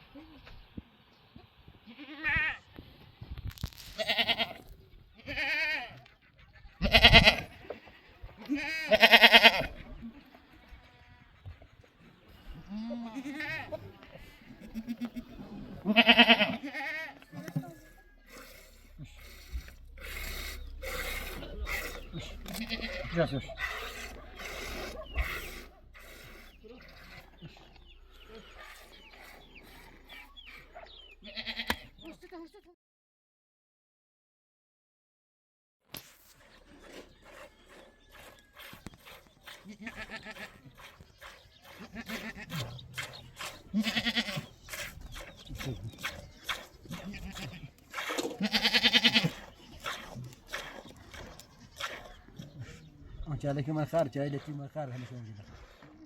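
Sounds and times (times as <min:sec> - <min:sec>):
sheep bleating: 0:04.0 - 0:04.6, 0:05.2 - 0:06.0, 0:06.8 - 0:07.5, 0:08.4 - 0:09.7, 0:12.6 - 0:17.3, 0:20.6 - 0:25.8, 0:31.2 - 0:32.4, 0:39.7 - 0:40.6, 0:43.7 - 0:44.5, 0:48.4 - 0:49.5
lower animal calls: 0:17.4 - 0:31.7.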